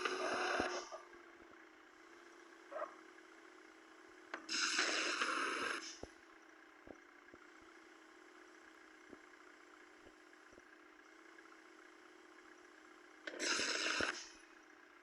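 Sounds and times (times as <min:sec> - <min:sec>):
vehicle engine idling: 0:00.0 - 0:15.0
loud burst of noise: 0:04.4 - 0:06.0, 0:13.3 - 0:14.4.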